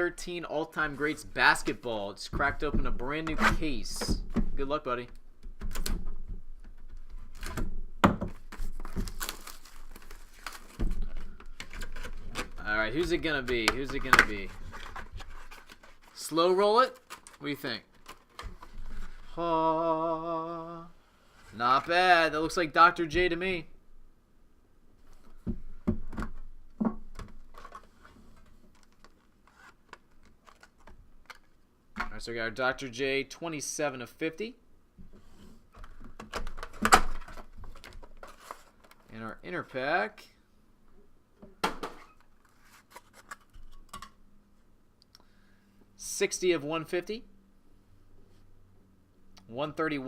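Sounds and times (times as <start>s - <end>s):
packaging clicks and rustling: 8.4s - 16.2s, 16.8s - 18.9s, 27.2s - 31.6s
plastic wrapping crinkling: 8.4s - 19.3s.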